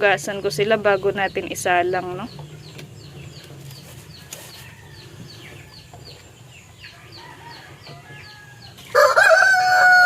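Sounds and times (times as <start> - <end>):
chicks peeping: 0.1 - 10.0.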